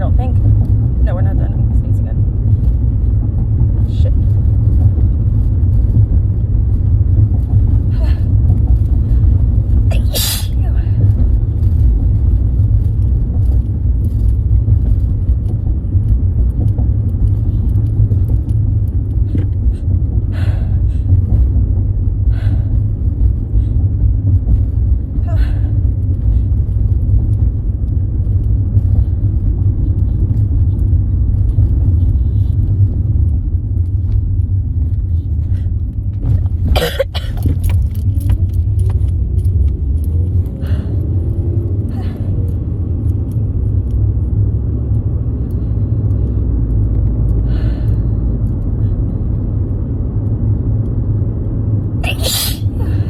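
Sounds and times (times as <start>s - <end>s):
car interior engine rumble: 0.0s - 53.0s
clicks and rattles: 36.1s - 40.5s.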